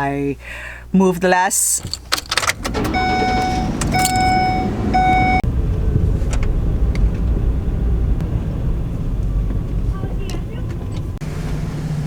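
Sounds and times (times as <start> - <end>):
low engine rumble: 2.6 - 12.0
vehicle warning chime: 2.7 - 5.5.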